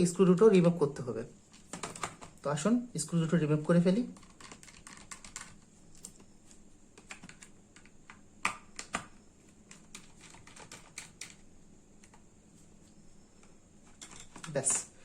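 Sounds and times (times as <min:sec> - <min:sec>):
screwdriver clicking on metal caddy: 0:13.9 - 0:14.8.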